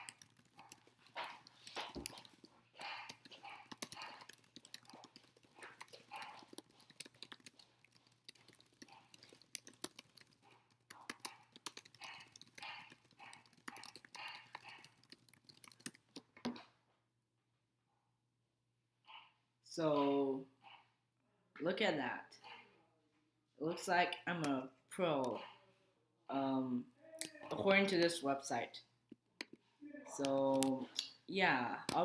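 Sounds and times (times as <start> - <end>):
keyboard typing fast: 0.0 - 16.4, 30.2 - 30.7.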